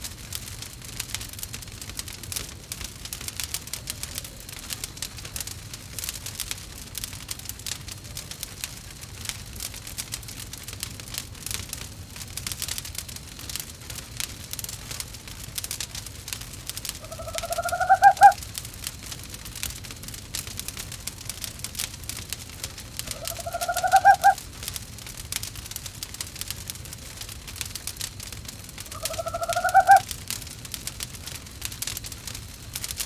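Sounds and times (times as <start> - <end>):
wood fire crackling: 0.0 - 33.0
owl trilling call: 17.0 - 18.4, 23.1 - 24.4, 28.9 - 30.0.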